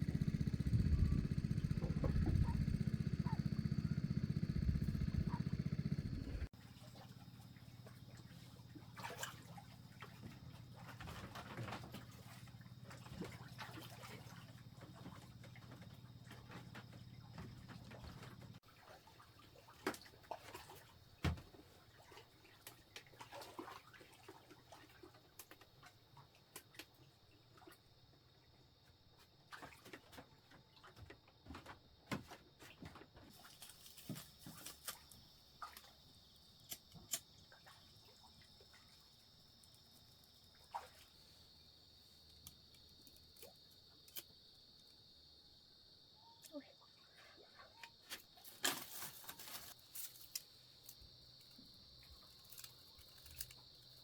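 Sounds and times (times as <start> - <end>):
small drips: 33.3 - 44.9
high-pitched insect trill: 47.7 - 54.0.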